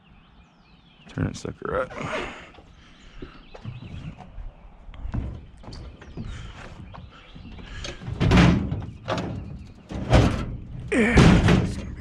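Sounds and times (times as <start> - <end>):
loud heavy thud: 8.1 - 12.0.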